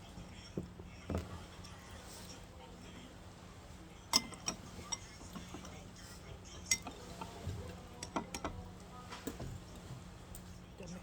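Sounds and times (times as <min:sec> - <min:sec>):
utensils clinking against plates: 0:04.1 - 0:05.8, 0:06.6 - 0:08.6.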